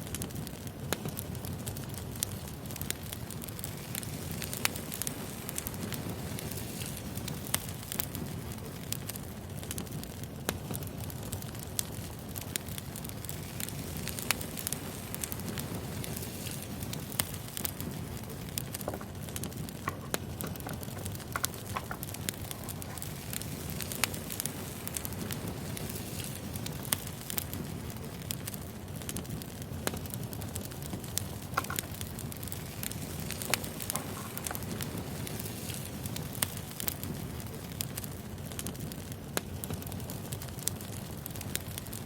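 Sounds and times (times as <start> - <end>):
firewood crackling and popping: 0.0 - 42.0
wood fire rumbling: 0.0 - 42.0.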